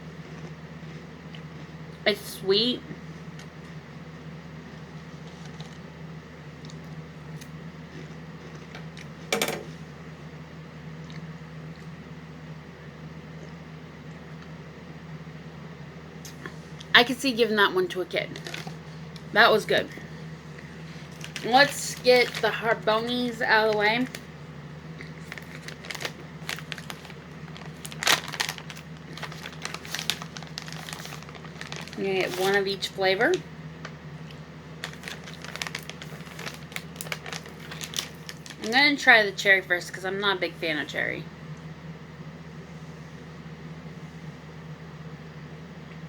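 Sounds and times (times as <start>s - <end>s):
low room hum: 0.0s - 46.0s
plastic packaging crinkling: 18.2s - 19.8s, 20.6s - 24.3s, 25.0s - 39.4s.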